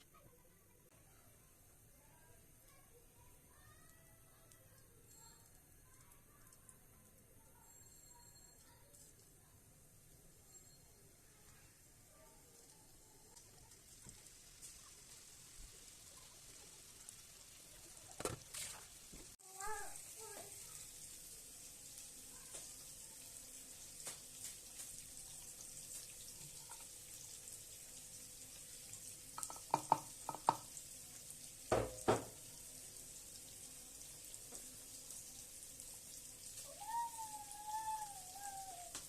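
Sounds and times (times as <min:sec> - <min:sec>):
food sizzling in hot oil: 0:07.6 - 0:39.0.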